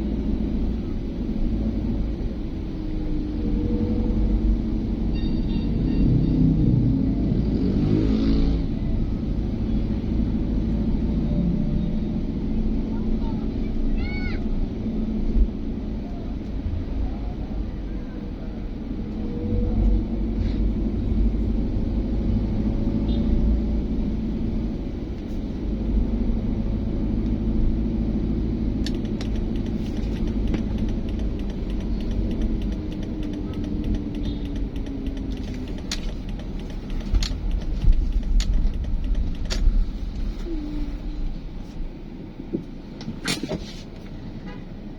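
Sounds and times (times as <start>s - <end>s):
vehicle engine rumbling: 0.0s - 44.9s
light clicks and sharp ticks: 28.8s - 40.6s.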